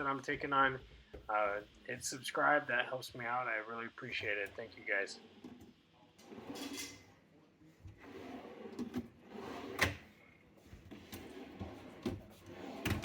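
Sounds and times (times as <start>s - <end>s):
wooden drawers sliding: 7.9s - 10.1s, 10.8s - 13.0s.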